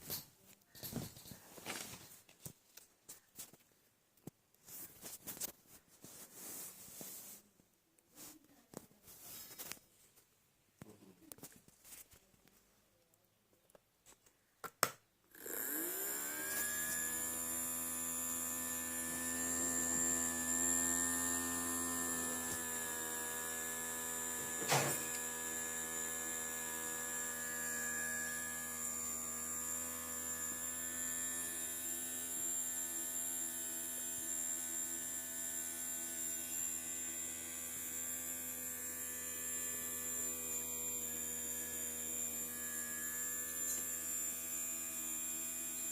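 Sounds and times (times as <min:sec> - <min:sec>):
small electric motor humming: 0:15.3 - 0:45.9.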